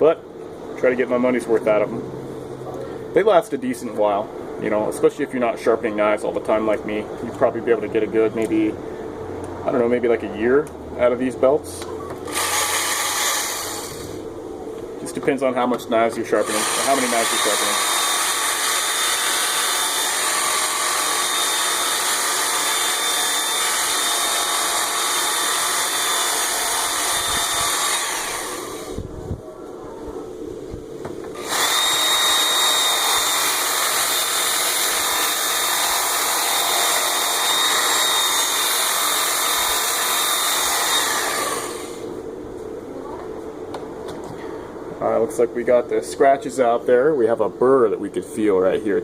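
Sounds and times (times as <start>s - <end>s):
belt sharpener grinding axe: 12.3s - 14.2s, 16.4s - 28.9s, 31.4s - 42.0s.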